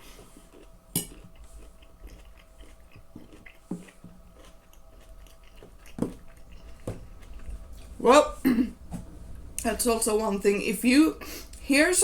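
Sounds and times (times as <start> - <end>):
person chewing food: 0.0 - 8.0.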